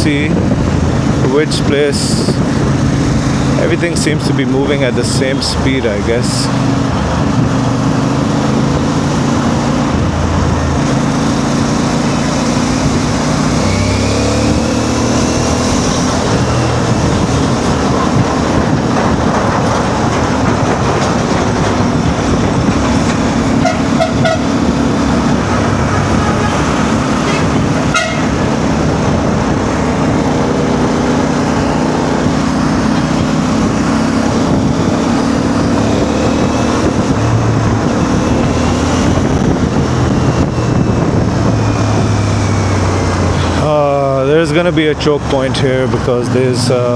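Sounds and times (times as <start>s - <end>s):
motorcycle engine revving: 0.0s - 46.9s
wind and road noise: 0.0s - 46.9s
short horn toots: 23.6s - 24.6s, 25.4s - 28.5s.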